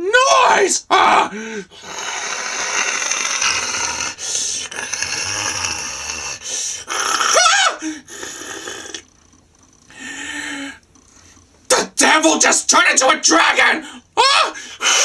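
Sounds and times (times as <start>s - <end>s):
person growling like monster: 1.0s - 9.0s.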